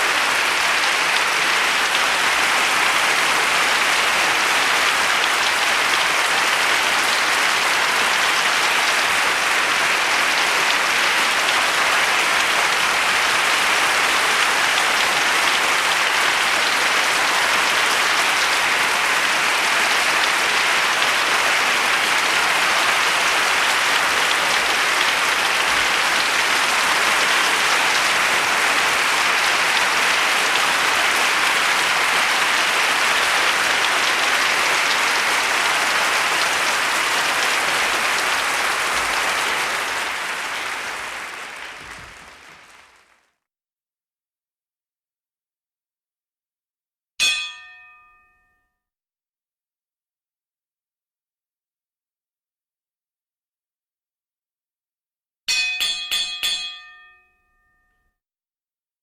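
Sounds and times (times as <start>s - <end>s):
audience applauding: 0.0s - 43.4s.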